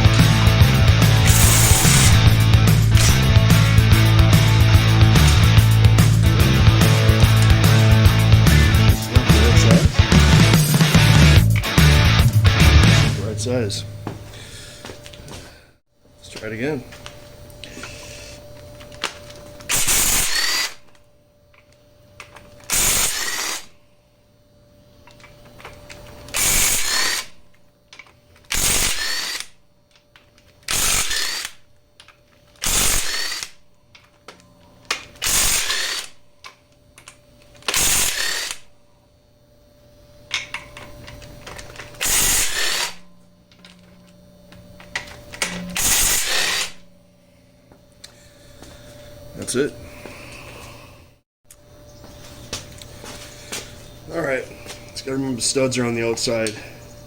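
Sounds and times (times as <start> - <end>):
power tool spinning: 0.0 - 13.2, 17.6 - 21.0, 22.2 - 23.8, 25.1 - 27.4, 28.0 - 31.7, 32.5 - 36.2, 37.1 - 38.7, 40.3 - 47.2.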